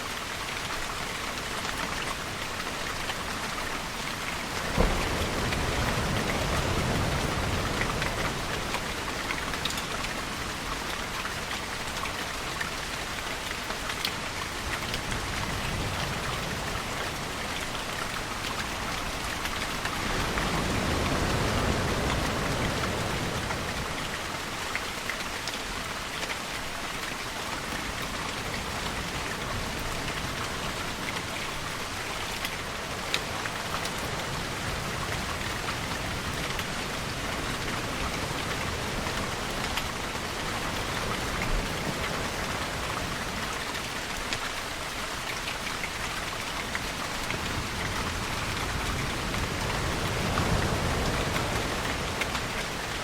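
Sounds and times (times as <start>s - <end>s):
steady rain falling: 0.0s - 53.0s.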